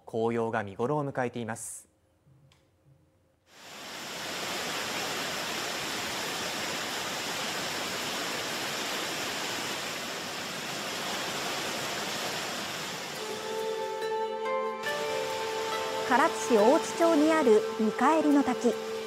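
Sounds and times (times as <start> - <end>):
waterfall roaring: 3.6 - 14.0, 14.8 - 19.0.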